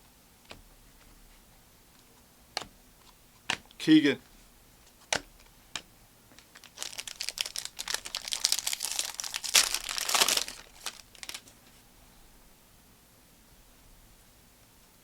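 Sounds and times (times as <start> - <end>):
card pack wrapper crinkling and tearing: 6.4 - 11.5.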